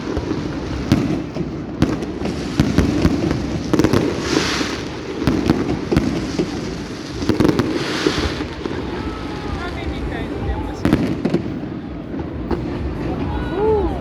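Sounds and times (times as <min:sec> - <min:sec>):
fireworks bangs: 0:00.0 - 0:14.0
fireworks hissing crackle: 0:00.0 - 0:14.0.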